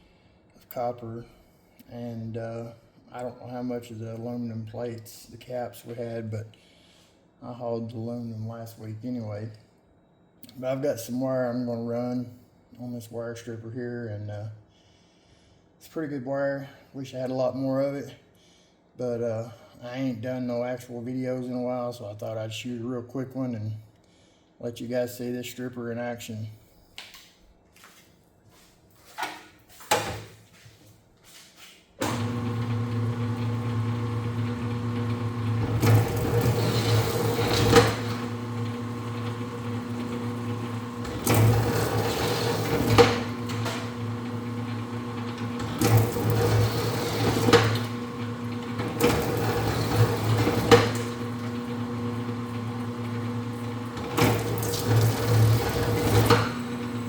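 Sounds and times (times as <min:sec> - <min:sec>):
wire fed through rollers: 0:32.0 - 0:57.0
wire stripping machine motor hum: 0:32.0 - 0:57.0.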